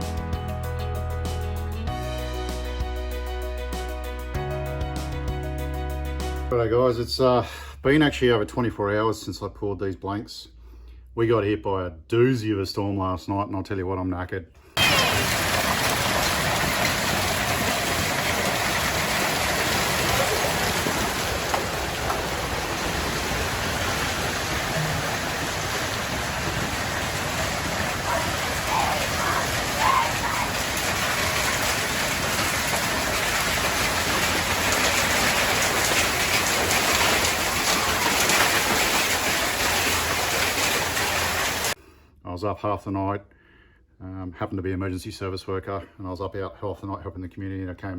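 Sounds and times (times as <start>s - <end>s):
heavy rain falling: 14.8s - 41.8s.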